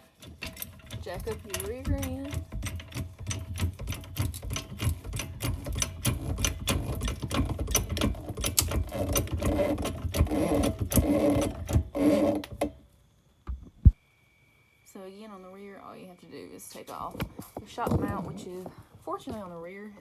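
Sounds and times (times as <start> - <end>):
jack clicking: 0.0 - 12.8.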